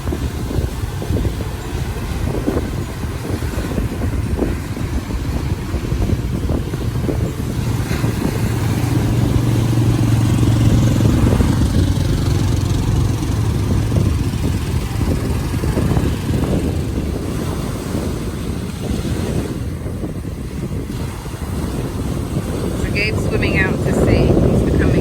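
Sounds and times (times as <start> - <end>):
motor droning: 0.0 - 25.0
surf: 0.0 - 25.0
wind buffeting microphone: 0.0 - 25.0.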